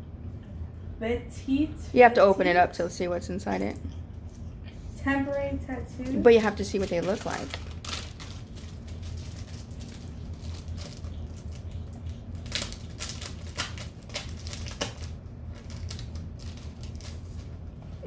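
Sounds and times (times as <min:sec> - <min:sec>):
plastic packet crinkling: 0:06.3 - 0:18.0.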